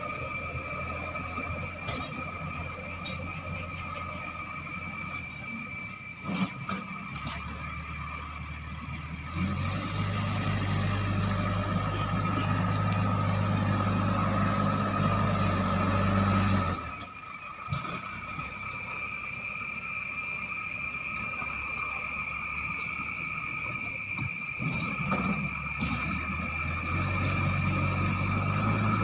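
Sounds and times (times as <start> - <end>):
backhoe diesel engine working: 0.0 - 29.0
high-pitched whine: 0.0 - 29.0.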